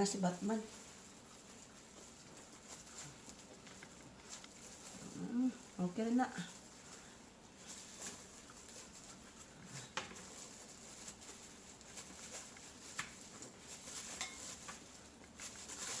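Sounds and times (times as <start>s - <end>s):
utensils clicking and tapping: 14.1s - 14.9s.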